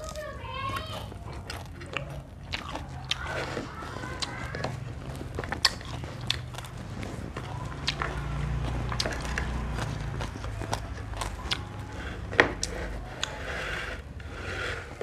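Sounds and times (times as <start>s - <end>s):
chewing crunchy food: 0.0s - 15.0s.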